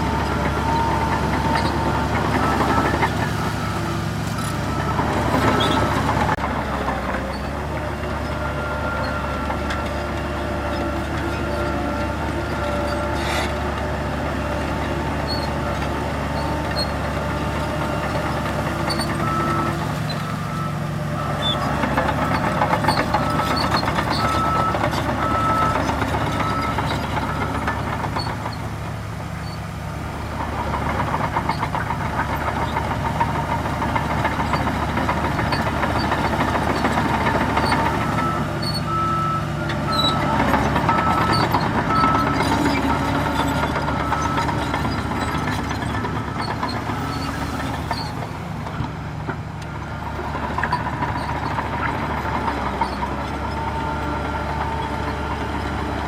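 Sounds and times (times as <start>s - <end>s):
heavy diesel machinery running: 0.0s - 56.0s
reversing alarm beeping: 18.0s - 27.7s, 35.3s - 48.9s.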